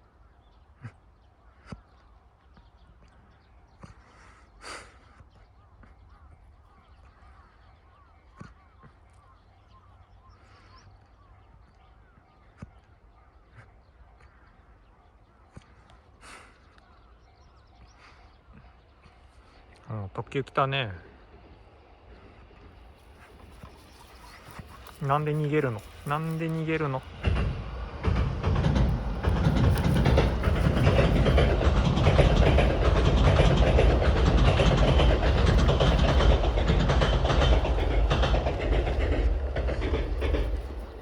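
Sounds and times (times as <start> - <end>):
faint outdoor ambience: 0.0 - 41.0
light taps: 28.8 - 40.8.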